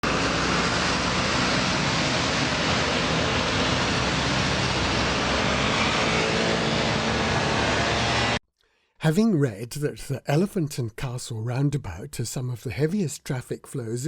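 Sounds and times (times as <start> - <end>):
dense road traffic: 0.0 - 8.4.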